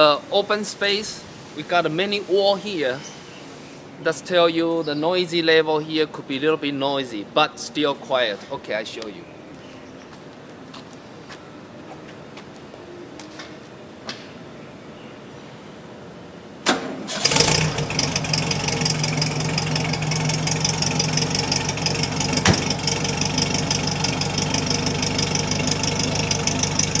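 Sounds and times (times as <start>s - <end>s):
engine cranking and idling: 16.7s - 27.0s
sharp click: 22.4s - 22.8s.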